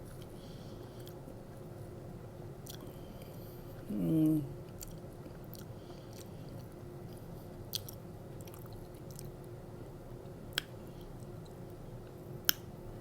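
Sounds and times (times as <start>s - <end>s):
air conditioner hum: 0.0s - 13.0s
chewing soft food: 2.6s - 3.9s, 4.6s - 9.6s.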